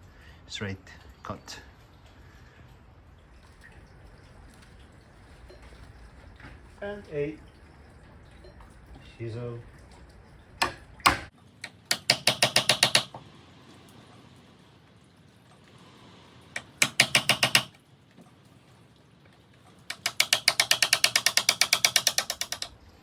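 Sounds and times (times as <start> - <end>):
rapid clicks of hand tools: 10.6 - 13.2, 16.6 - 17.8, 19.9 - 22.8.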